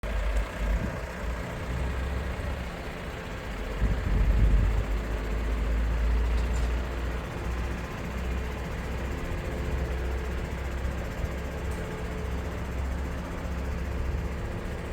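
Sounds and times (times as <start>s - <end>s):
truck engine rumbling: 0.0s - 14.9s.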